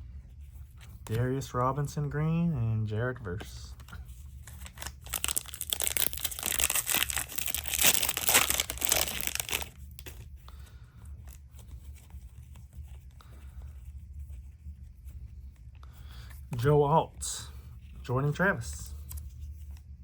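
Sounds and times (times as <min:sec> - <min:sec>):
cards rustling and clicking: 0:03.3 - 0:13.3
cellophane wrapper tearing and crinkling: 0:04.4 - 0:10.3.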